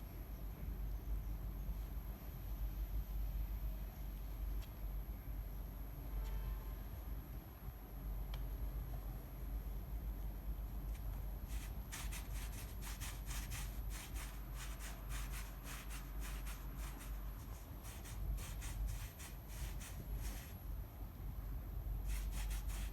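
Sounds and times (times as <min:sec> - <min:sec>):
steady low hum: 0:00.0 - 0:22.9
cats scratching inside box: 0:11.5 - 0:20.6, 0:22.1 - 0:22.9.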